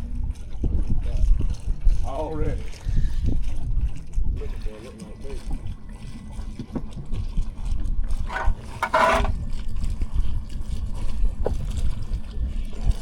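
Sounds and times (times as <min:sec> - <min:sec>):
water lapping against a boat: 0:00.0 - 0:13.0
wind rumble on microphone: 0:00.0 - 0:13.0.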